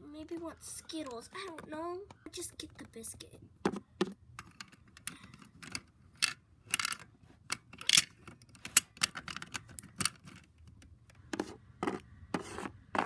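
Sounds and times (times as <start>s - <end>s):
plastic toys clicking and tapping: 3.7s - 13.0s.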